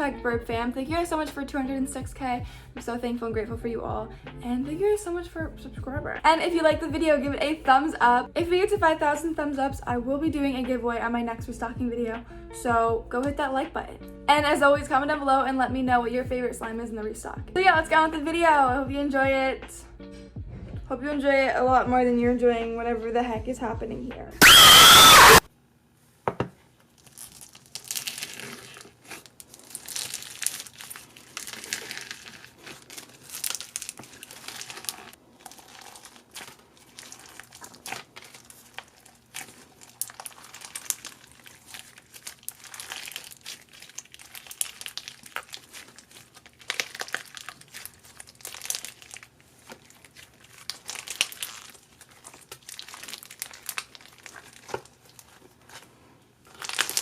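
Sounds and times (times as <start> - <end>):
slime squished by hand: 27.0 - 55.9, 56.5 - 57.0.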